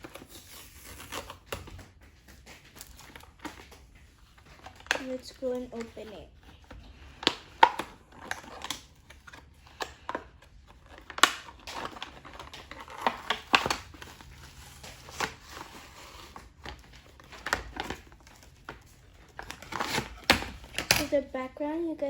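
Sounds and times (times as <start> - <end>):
packaging crinkling and tearing: 0.0 - 21.4.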